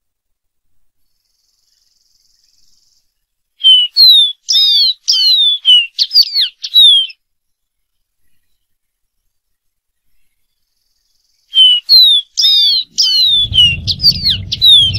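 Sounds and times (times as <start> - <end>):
bird whistling song: 3.6 - 7.2, 10.2 - 14.9.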